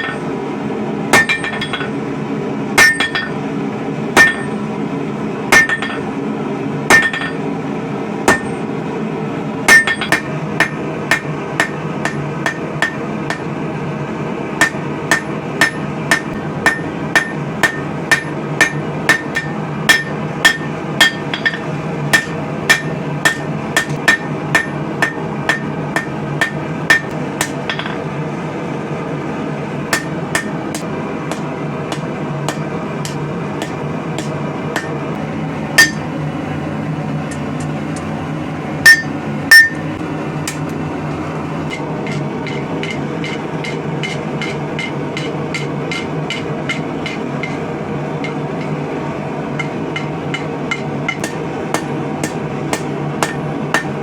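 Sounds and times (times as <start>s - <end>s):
hammer striking steel on anvil: 0.0s - 0.3s, 1.1s - 2.0s, 2.8s - 3.4s, 4.2s - 4.7s, 5.5s - 6.1s, 6.9s - 7.4s, 8.3s - 8.7s, 9.7s - 13.5s, 14.6s - 28.0s, 29.9s - 35.0s, 35.8s - 36.1s, 38.8s - 40.8s, 41.7s - 48.9s, 49.6s - 54.0s
low background rumble: 0.0s - 54.0s.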